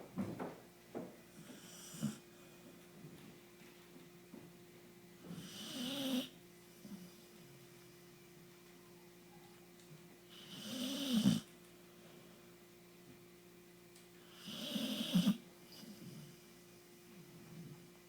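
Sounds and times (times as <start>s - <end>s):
pet snoring: 1.3s - 2.3s, 5.3s - 7.1s, 10.3s - 11.5s, 14.3s - 16.4s.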